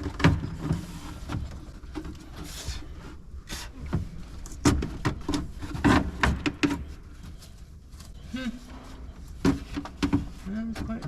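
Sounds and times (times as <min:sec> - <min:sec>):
plastic trim rubbing and scraping: 0:00.0 - 0:07.4.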